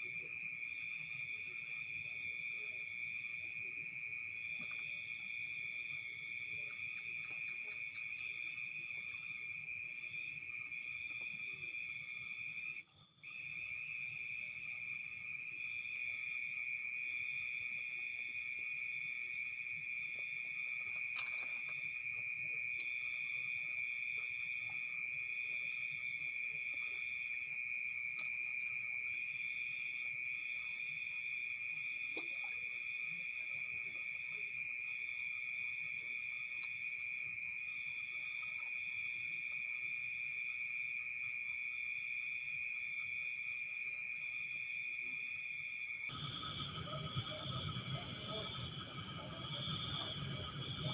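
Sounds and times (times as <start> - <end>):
insects trilling steadily: 0.0 - 50.9
fast pulsing insect trill: 46.0 - 50.9.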